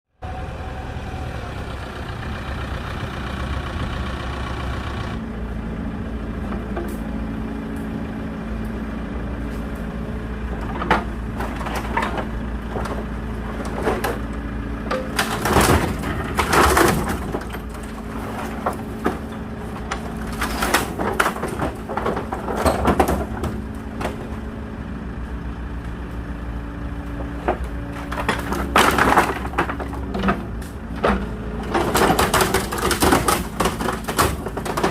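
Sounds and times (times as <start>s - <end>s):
diesel engine running: 0.1s - 34.9s
wood cracking and crashing: 10.4s - 24.6s, 27.2s - 34.9s.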